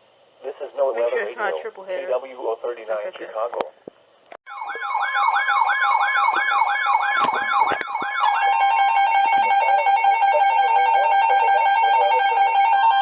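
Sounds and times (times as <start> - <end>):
pulsing multi-tone beep: 4.5 - 13.0
weather radio alert alarm: 4.5 - 13.0.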